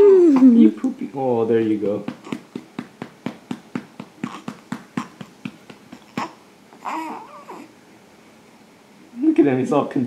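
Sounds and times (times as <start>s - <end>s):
hand patting baby's back: 1.8s - 6.4s.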